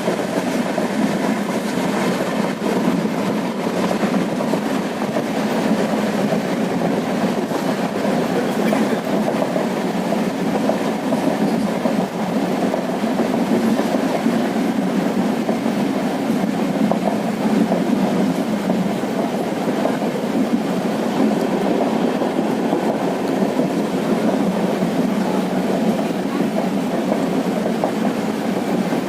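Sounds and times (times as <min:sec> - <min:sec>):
train wheels rumbling on rails: 0:00.0 - 0:29.0.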